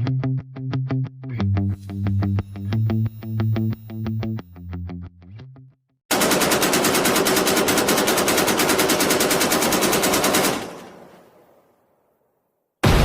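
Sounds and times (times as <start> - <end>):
distorted guitar riff: 0.0 - 5.7
automatic gunfire: 6.1 - 11.4.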